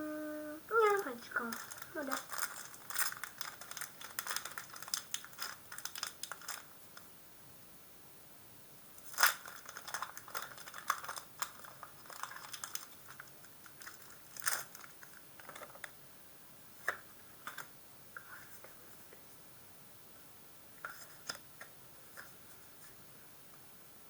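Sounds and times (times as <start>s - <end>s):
foil wrapper crinkling: 0.8s - 6.7s, 9.0s - 16.0s
cards clicking and rubbing: 1.4s - 6.7s.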